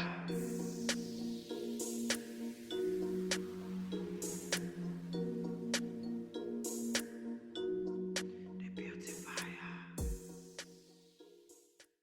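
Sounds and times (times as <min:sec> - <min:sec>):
held synth notes: 0:00.0 - 0:09.4.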